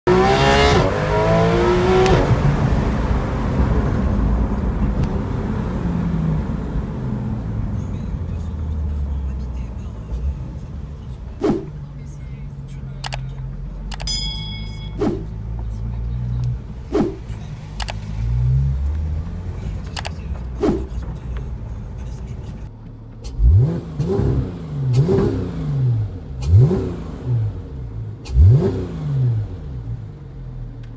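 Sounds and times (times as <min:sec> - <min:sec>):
car engine revving: 0:00.0 - 0:14.1, 0:14.8 - 0:30.9
sharp clicks: 0:13.0 - 0:14.2, 0:16.4 - 0:18.2, 0:19.8 - 0:21.5.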